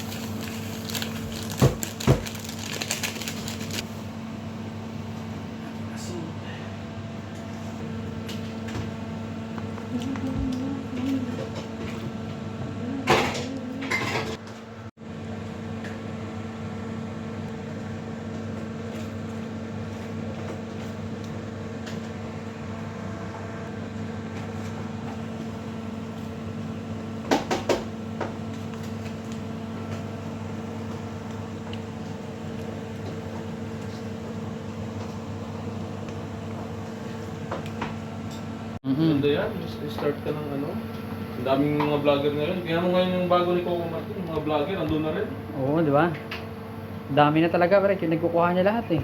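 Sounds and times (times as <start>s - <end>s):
pots and utensils clattering: 13.2s - 14.4s.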